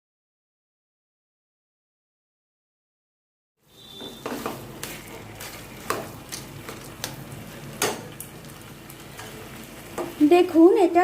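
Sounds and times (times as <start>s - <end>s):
faint sizzle: 3.6s - 11.0s
spatula scraping and knocking a pan: 3.8s - 7.2s.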